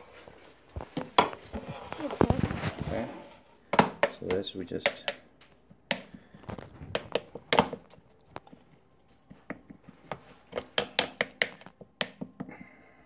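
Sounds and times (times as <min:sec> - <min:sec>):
spoon tapping and scraping a dish: 0:09.3 - 0:12.4.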